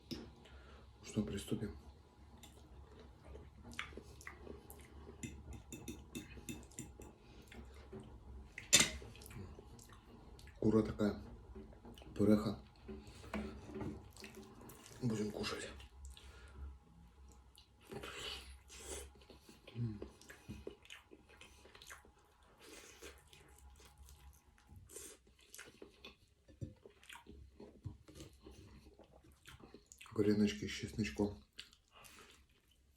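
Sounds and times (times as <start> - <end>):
person chewing food: 2.3 - 10.6, 11.3 - 15.0, 15.7 - 30.2, 31.4 - 32.9
cutlery clinking against dishes: 5.2 - 7.2, 8.6 - 9.1.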